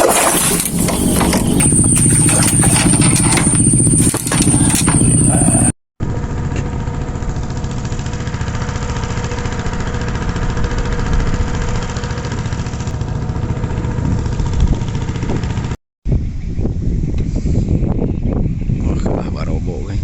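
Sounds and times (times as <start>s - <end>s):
small engine running steadily: 0.0s - 15.8s.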